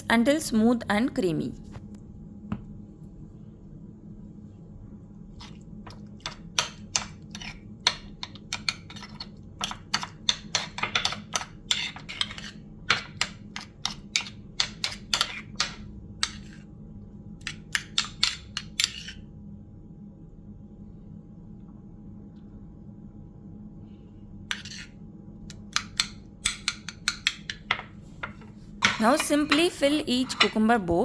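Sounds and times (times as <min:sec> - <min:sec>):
spoon scraping a bowl: 0:06.2 - 0:16.6, 0:18.2 - 0:19.2, 0:24.5 - 0:25.0, 0:28.8 - 0:30.8.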